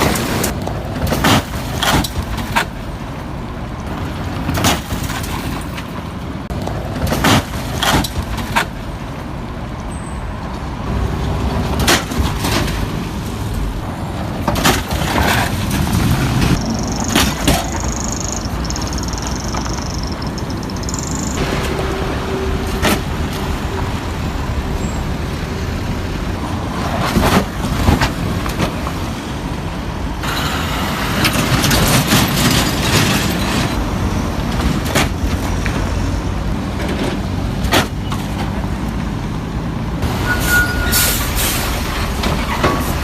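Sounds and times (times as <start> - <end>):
car rumbling over rough road: 10.4 - 40.2
wheels knocking over bumps: 14.3 - 21.6
high steady tone: 16.6 - 21.4.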